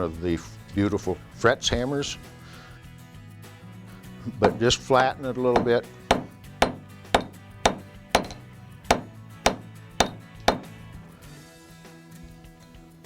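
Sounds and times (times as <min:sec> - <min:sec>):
hammer striking silver wire: 0:04.4 - 0:04.8, 0:05.6 - 0:10.8.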